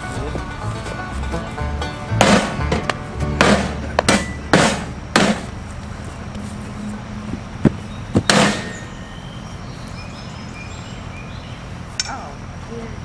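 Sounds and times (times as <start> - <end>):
blows smashing metal toaster oven: 1.8 - 5.6, 8.3 - 9.0
clattering metallic ring: 2.1 - 5.5, 8.3 - 9.2.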